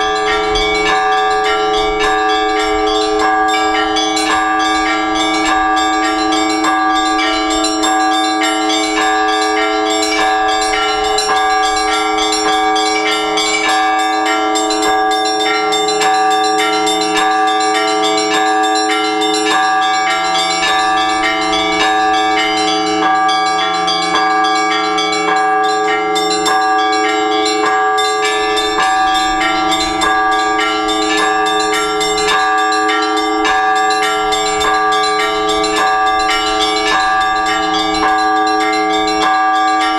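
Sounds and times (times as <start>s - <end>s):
deep bell tolling: 0.0s - 39.9s
hum of larger bells: 0.0s - 39.9s
small bells struck quickly: 0.0s - 39.9s.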